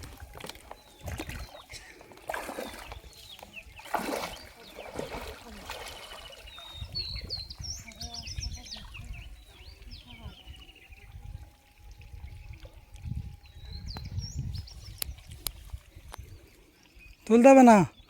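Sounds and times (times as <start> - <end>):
water splashing in pond: 0.0 - 13.5
small birds chirping: 0.2 - 18.0.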